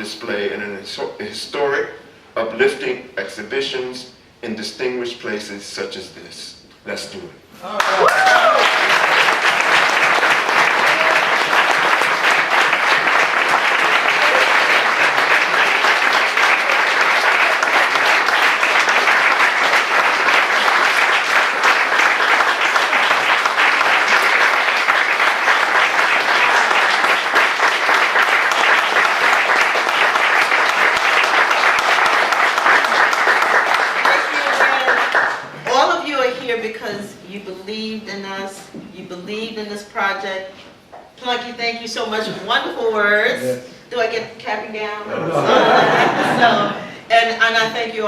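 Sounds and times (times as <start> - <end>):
audience applauding: 7.8 - 35.8.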